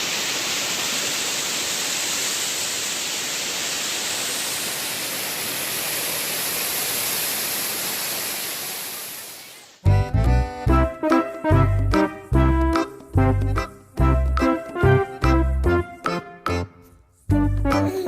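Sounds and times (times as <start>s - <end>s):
waterfall rushing: 0.0s - 9.4s.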